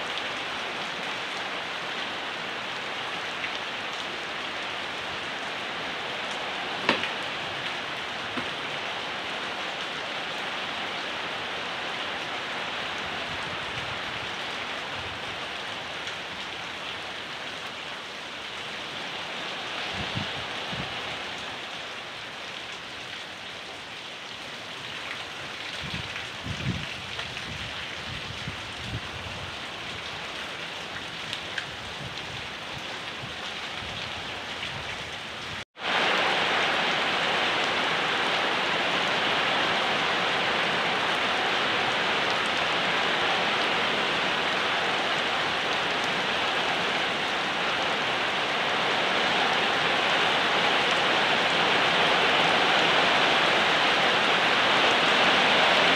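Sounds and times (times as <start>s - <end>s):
steady rain hiss: 0.0s - 55.9s
sharp tap: 6.8s - 7.1s.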